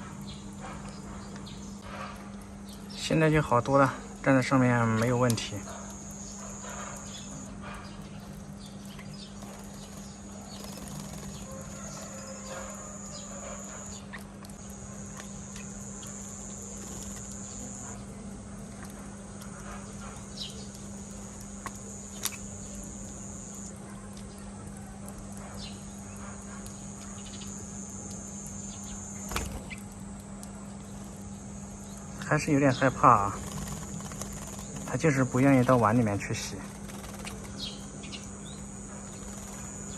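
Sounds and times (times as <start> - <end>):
thin high whine: 4.8 - 7.7, 9.4 - 18.2, 20.9 - 23.8, 25.8 - 39.9
low hum: 25.3 - 39.9.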